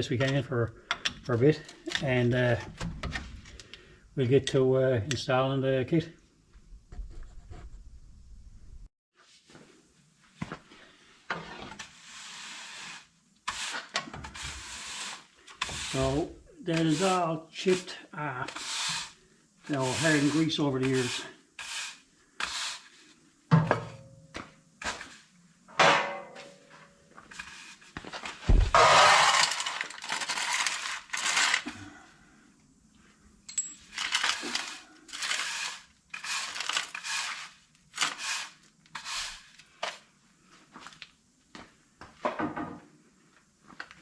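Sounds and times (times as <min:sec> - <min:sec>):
metallic clinks and taps: 0:33.5 - 0:33.8.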